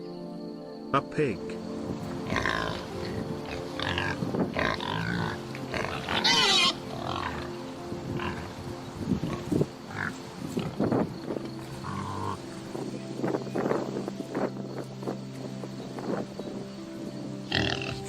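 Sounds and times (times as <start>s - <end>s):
pigs grunting: 2.2s - 10.9s, 11.8s - 12.5s, 17.5s - 18.0s
pig squealing: 2.3s - 7.5s.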